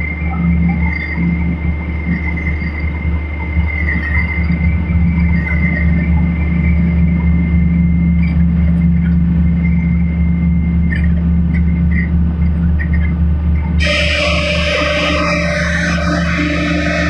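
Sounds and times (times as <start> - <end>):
machinery low drone: 0.0 - 17.0.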